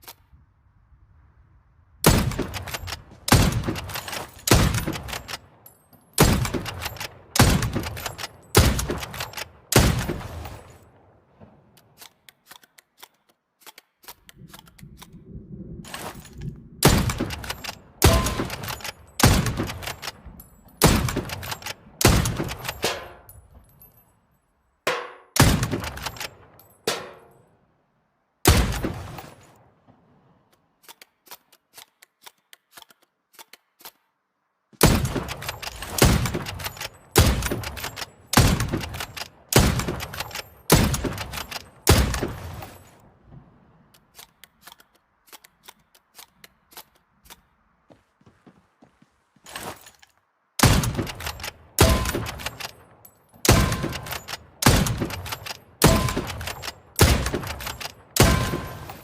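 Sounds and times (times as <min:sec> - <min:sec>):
rifle shots: 0:02.0 - 0:05.6, 0:06.2 - 0:10.9, 0:16.8 - 0:23.2, 0:24.9 - 0:27.2, 0:28.4 - 0:29.5, 0:34.8 - 0:42.8, 0:50.6 - 0:59.0
faint small clicks: 0:11.8 - 0:15.2.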